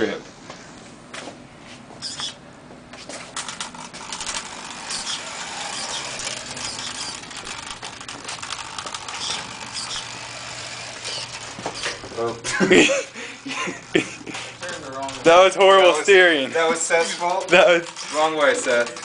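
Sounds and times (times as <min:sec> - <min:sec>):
toy car motor running: 0:02.0 - 0:02.3, 0:03.4 - 0:12.3, 0:13.4 - 0:19.0
small clicks and rattles: 0:03.3 - 0:10.2, 0:14.3 - 0:15.4, 0:17.2 - 0:19.0.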